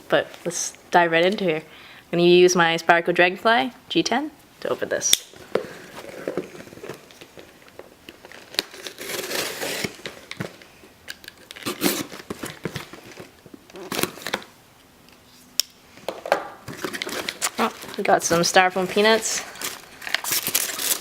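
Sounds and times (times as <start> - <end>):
tape tearing: 8.1 - 14.5, 16.7 - 21.0
knife slitting packing tape: 8.5 - 10.0, 11.3 - 12.3, 20.0 - 21.0.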